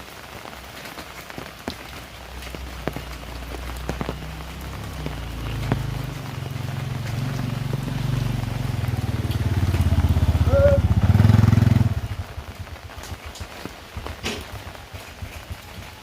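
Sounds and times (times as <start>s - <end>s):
vehicle engine passing by: 2.7s - 12.6s.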